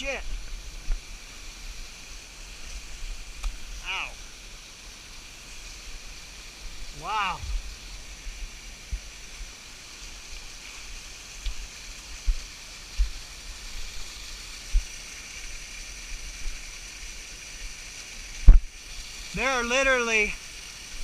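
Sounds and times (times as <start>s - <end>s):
water rushing in a creek: 0.0s - 21.0s
dull low thumps: 7.4s - 7.8s.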